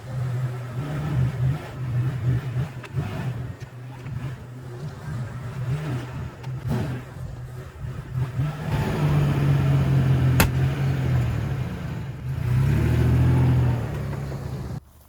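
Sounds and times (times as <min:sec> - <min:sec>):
sharp click: 0:10.4 - 0:10.6.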